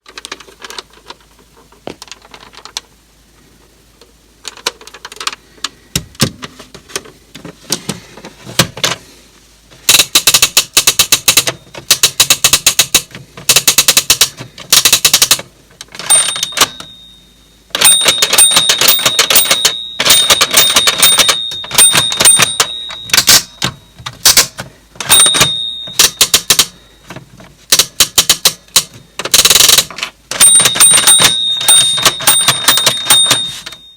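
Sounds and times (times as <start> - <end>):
toy typewriter key clicks: 9.9 - 15.4, 17.8 - 26.7, 27.7 - 33.9
steady high tone: 16.0 - 24.1, 25.0 - 26.9, 30.4 - 33.9.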